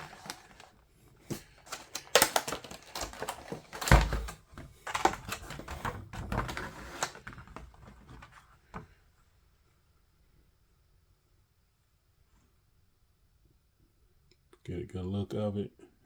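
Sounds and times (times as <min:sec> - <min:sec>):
plastic clicks and rattles: 0:01.3 - 0:08.2.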